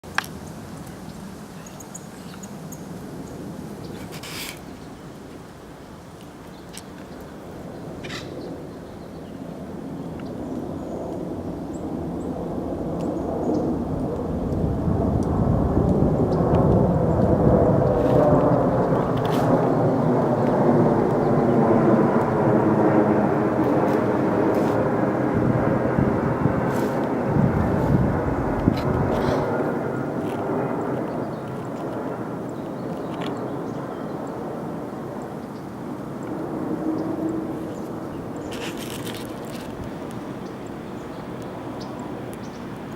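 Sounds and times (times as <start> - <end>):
jet flying low overhead: 0.1 - 42.9
rush of hiss: 26.7 - 28.0.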